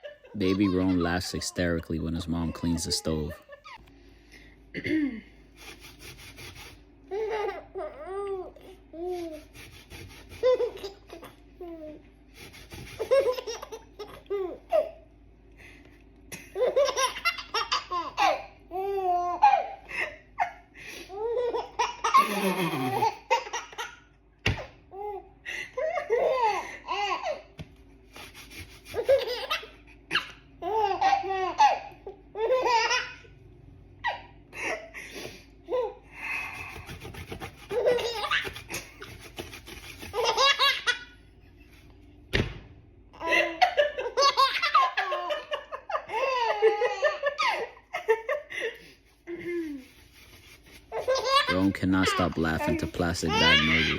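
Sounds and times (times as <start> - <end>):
baby laughing hysterically: 0.0 - 3.8, 10.4 - 11.3, 12.7 - 15.0, 16.5 - 19.8, 20.4 - 24.0, 25.8 - 27.4, 28.8 - 33.2, 36.6 - 41.2, 43.2 - 48.6, 50.9 - 53.9.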